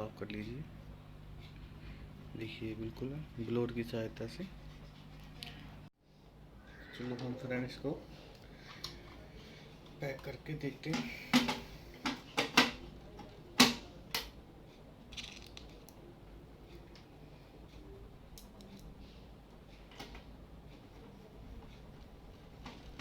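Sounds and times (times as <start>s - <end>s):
printer parts clicking and knocking: 10.9s - 12.8s, 13.6s - 13.9s.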